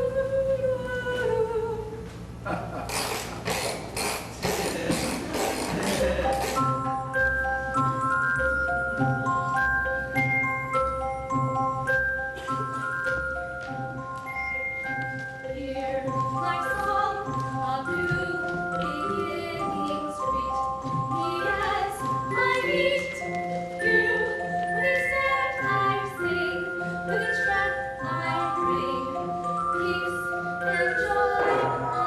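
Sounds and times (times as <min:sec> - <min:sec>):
bell-like mallet melody: 0:06.1 - 0:32.0
group of voices singing: 0:30.7 - 0:32.0.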